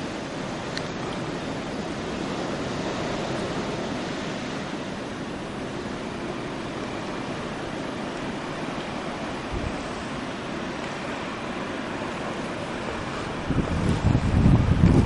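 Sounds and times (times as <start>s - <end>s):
blizzard wind rushing: 0.0s - 15.0s.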